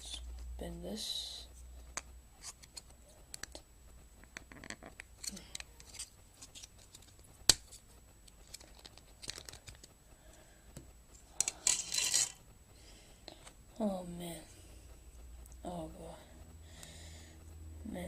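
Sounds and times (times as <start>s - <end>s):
plastic packaging rustling: 8.4s - 9.9s.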